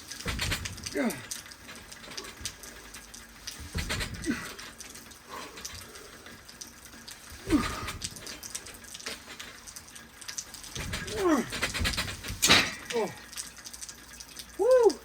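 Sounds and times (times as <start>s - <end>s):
weight stack thud: 0.1s - 2.6s, 3.6s - 4.7s, 10.7s - 13.0s.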